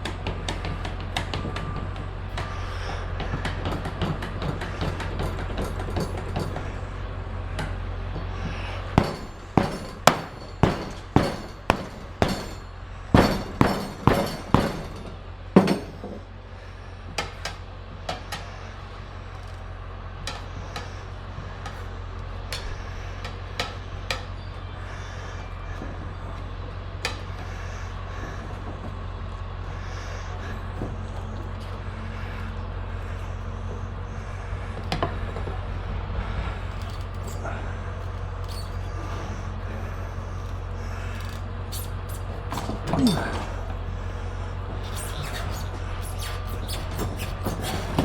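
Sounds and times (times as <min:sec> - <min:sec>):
sharp knocks of tools on tyre: 0:00.0 - 0:06.8, 0:07.6 - 0:16.2
steady low hum: 0:00.0 - 0:48.0.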